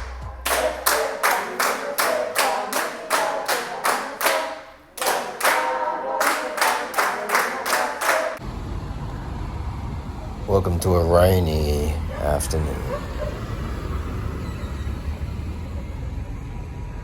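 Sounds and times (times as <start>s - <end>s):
people singing: 0.0s - 8.4s
rhythmic hand clapping: 0.0s - 8.4s.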